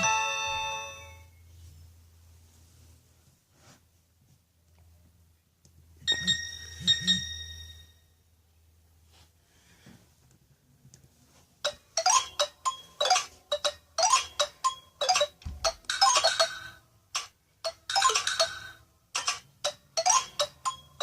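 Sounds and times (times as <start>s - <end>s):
phone ringtone melody: 0.0s - 1.3s, 11.7s - 16.8s, 17.7s - 18.8s, 19.7s - 21.0s.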